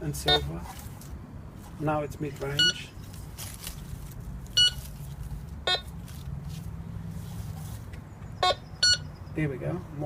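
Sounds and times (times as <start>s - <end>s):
metal detector beeps: 0.3s - 0.5s, 2.6s - 2.8s, 4.6s - 4.8s, 5.7s - 5.9s, 8.4s - 9.3s.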